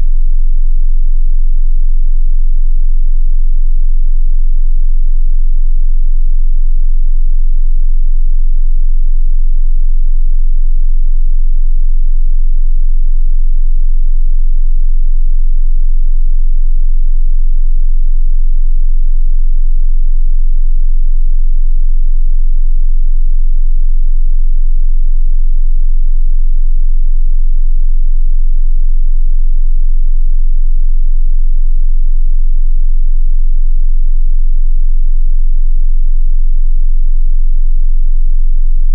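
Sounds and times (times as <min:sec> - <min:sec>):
very deep sine test tone: 0:00.0 - 0:38.9.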